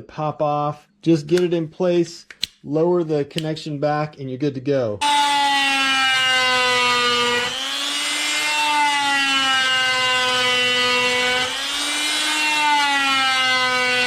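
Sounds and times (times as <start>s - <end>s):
oscillating multi-tool motor hum: 5.0s - 14.0s.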